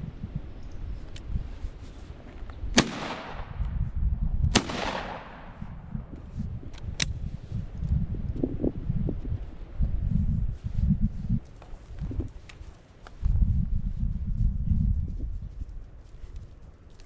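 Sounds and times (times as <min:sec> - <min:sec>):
shotgun shots with echo: 0:02.8 - 0:03.6, 0:04.5 - 0:05.6.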